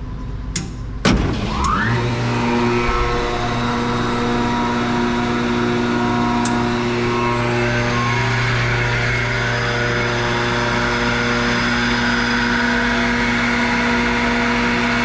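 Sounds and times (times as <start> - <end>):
air compressor clunk: 0.6 - 9.0
electric motor whine and hum: 1.2 - 15.0.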